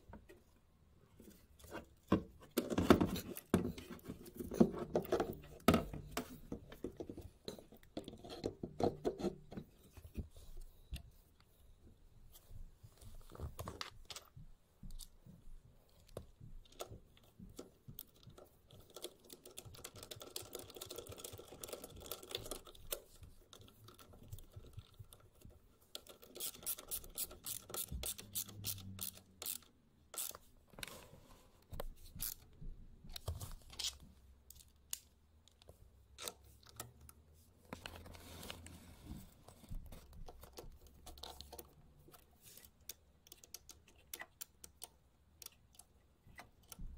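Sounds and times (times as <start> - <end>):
clicks and taps of small parts: 39.6 - 46.9.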